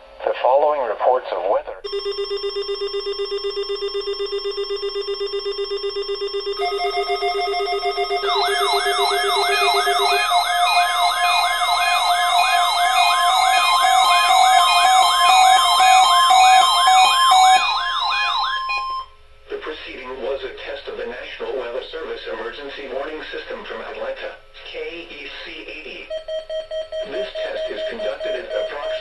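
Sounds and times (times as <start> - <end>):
pulsing low beep: 1.9 - 19.1, 26.1 - 29.0
steady high alarm tones: 1.9 - 19.3, 26.0 - 29.0
rising siren-like wail: 6.5 - 19.1.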